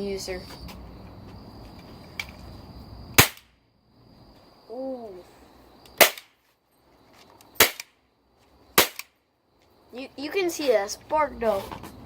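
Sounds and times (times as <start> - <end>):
toy cap gun bangs: 3.2 - 3.5, 6.0 - 6.4, 7.6 - 7.9, 8.8 - 9.2.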